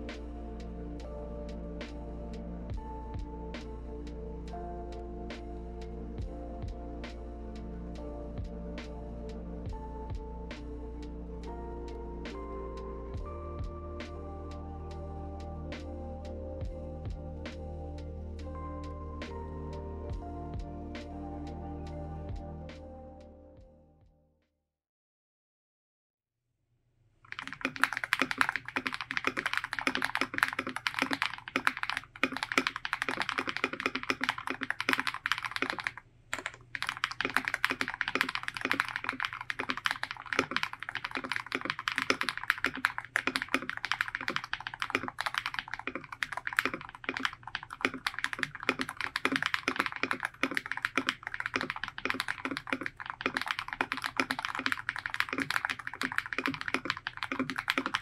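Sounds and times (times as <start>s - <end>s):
fast mechanical keyboard typing: 27.3s - 58.0s.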